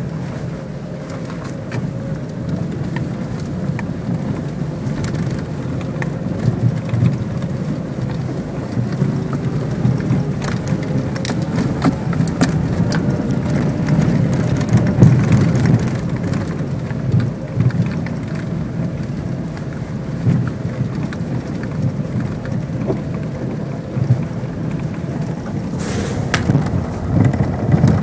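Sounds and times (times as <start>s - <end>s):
low road rumble: 0.0s - 28.0s
sharp knocks from underneath car: 26.2s - 28.0s.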